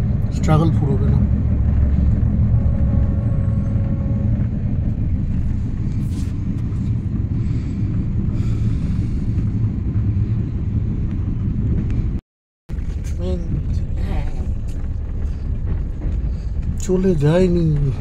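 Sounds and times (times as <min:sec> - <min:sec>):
train wheels rumbling: 0:00.0 - 0:18.0.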